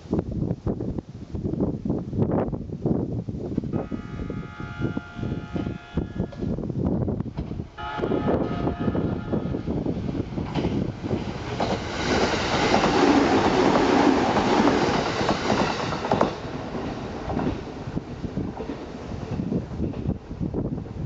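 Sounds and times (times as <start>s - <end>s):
electric train passing: 3.7s - 21.0s.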